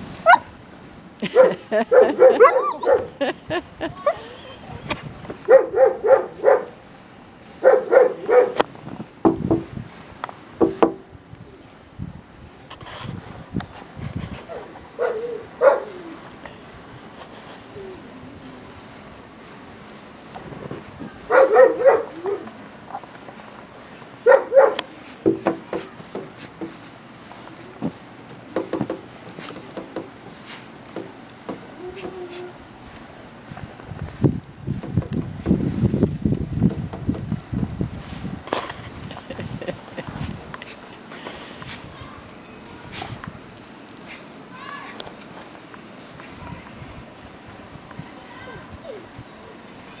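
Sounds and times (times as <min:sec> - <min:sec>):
dog barking: 0:00.2 - 0:00.5, 0:01.4 - 0:03.2, 0:05.5 - 0:06.8, 0:07.6 - 0:08.6, 0:14.5 - 0:16.0, 0:21.3 - 0:22.5, 0:24.2 - 0:24.9.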